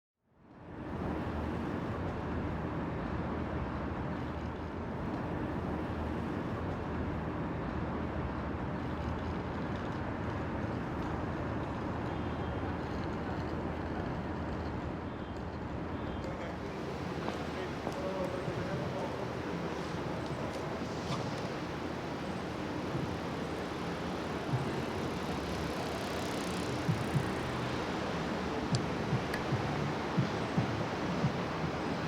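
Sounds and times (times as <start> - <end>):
traffic rumble: 0.6 - 32.0
low even hum: 0.9 - 32.0.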